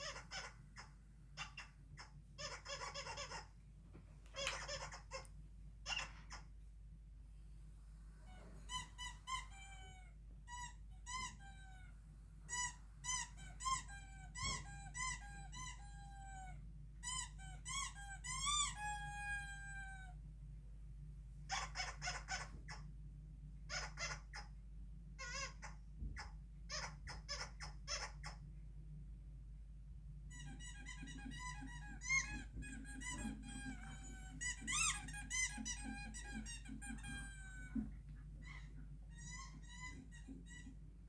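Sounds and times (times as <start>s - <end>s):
harsh raspy squawks: 0.0s - 3.5s, 4.4s - 6.5s, 21.5s - 22.8s, 23.7s - 24.5s, 25.2s - 28.4s, 30.3s - 37.2s.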